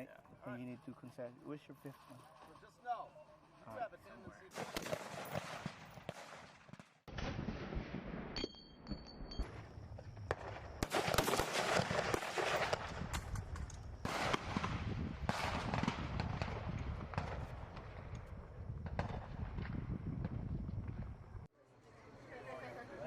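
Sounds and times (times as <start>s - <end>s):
rifle shots: 4.5s - 8.4s, 10.3s - 13.0s, 14.0s - 17.9s.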